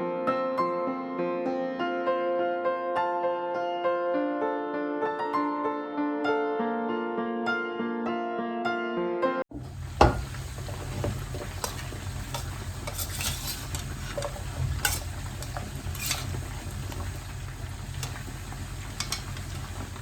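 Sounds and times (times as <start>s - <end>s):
chicken sizzling in oil: 9.5s - 20.0s
utensil knocking against pan: 10.0s - 16.4s.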